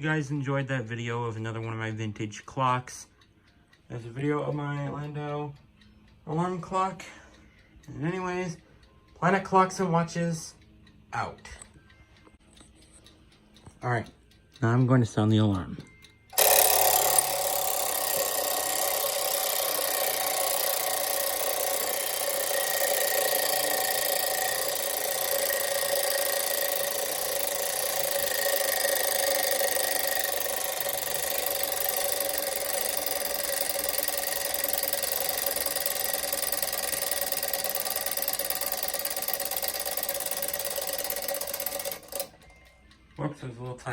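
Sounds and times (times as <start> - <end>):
alarm clock bell ringing: 15.7 - 42.8.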